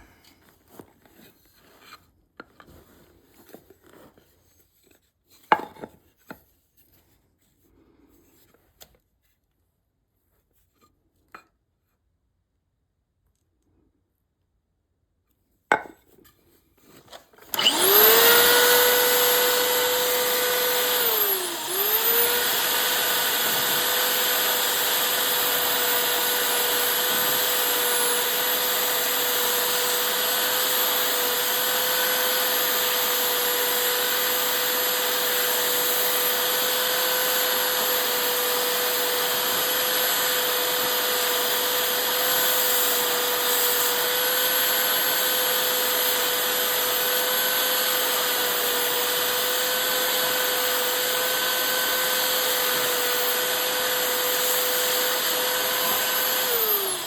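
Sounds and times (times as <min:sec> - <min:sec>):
electric motor whining: 0:17.5 - 0:57.0.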